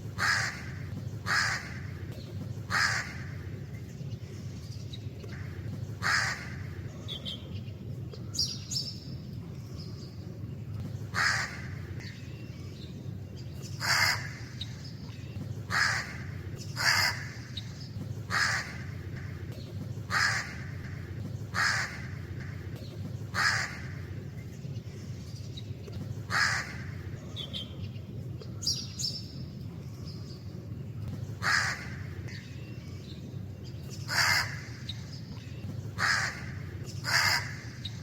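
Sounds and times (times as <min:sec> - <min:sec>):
low background rumble: 0:00.0 - 0:38.0
crow cawing: 0:00.2 - 0:02.0, 0:02.7 - 0:03.4, 0:05.4 - 0:06.8, 0:11.1 - 0:11.9, 0:13.8 - 0:14.6, 0:15.7 - 0:17.5, 0:18.3 - 0:19.4, 0:20.1 - 0:22.6, 0:23.3 - 0:24.1, 0:26.3 - 0:27.1, 0:31.4 - 0:32.3, 0:34.1 - 0:35.0, 0:36.0 - 0:38.0.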